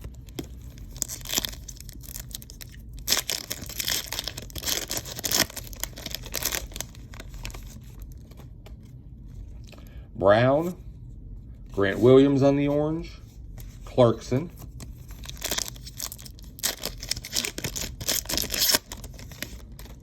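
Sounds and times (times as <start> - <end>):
card pack wrappers tearing: 0.0 - 8.4, 14.6 - 20.0.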